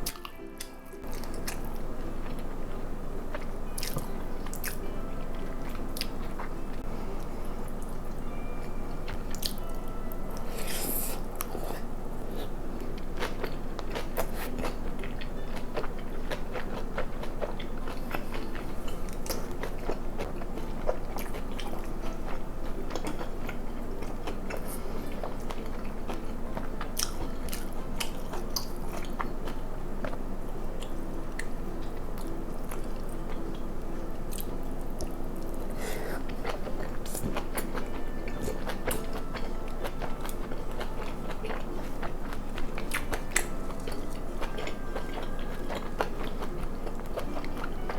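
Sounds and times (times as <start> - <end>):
chewing and biting: 3.3 - 4.8, 10.5 - 30.2, 34.3 - 47.9.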